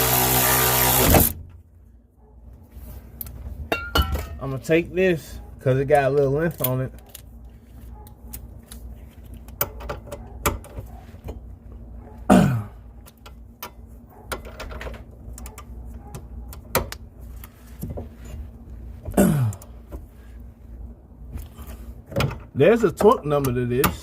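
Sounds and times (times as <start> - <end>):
person grunting: 12.3 - 12.8, 19.2 - 19.7.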